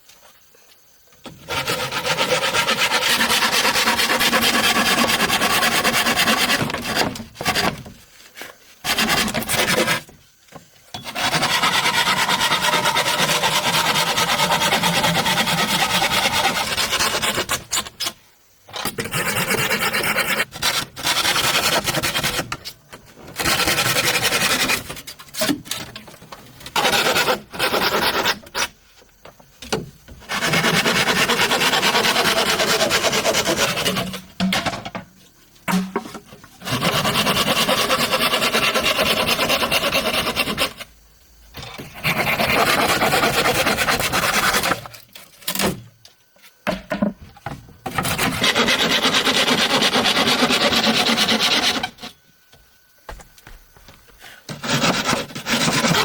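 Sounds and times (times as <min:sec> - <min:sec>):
hand tool rasping on bamboo: 0:01.4 - 0:07.9, 0:08.8 - 0:10.2, 0:11.0 - 0:18.1, 0:18.9 - 0:22.7, 0:26.7 - 0:28.7, 0:30.3 - 0:34.3, 0:36.6 - 0:40.8, 0:41.9 - 0:45.7, 0:47.9 - 0:52.2, 0:54.5 - 0:56.0.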